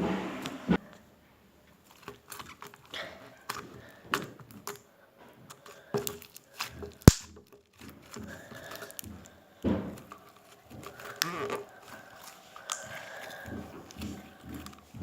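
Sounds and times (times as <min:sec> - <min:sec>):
slime crackling and popping: 0:01.8 - 0:03.6, 0:05.7 - 0:09.1, 0:09.9 - 0:15.0.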